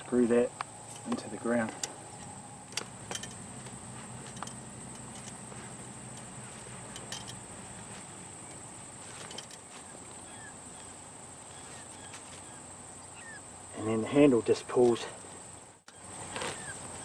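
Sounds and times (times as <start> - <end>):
crickets chirring: 0.0 - 17.0
light metallic clicks: 0.6 - 7.5.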